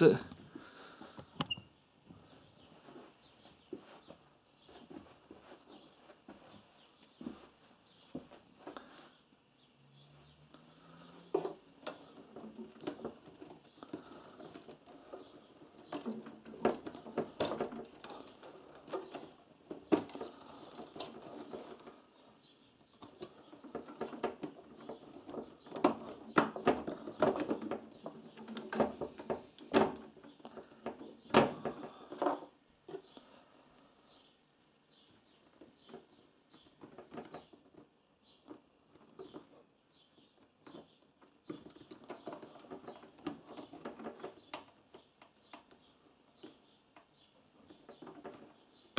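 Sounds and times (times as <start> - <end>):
clicks and scrapes of plastic and metal: 11.2 - 22.2, 22.9 - 33.1.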